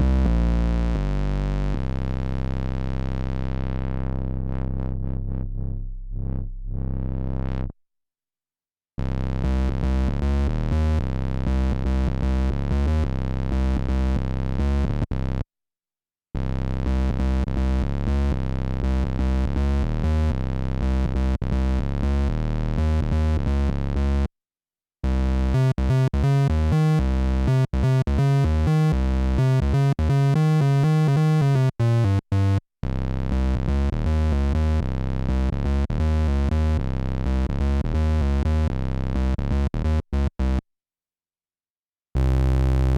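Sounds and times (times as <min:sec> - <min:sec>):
rhythmic synthesizer bass sequences: 0:00.0 - 0:07.7, 0:25.2 - 0:40.6, 0:42.2 - 0:42.9
synthesizer bass note with filter sweep: 0:02.8 - 0:07.7, 0:25.6 - 0:32.6.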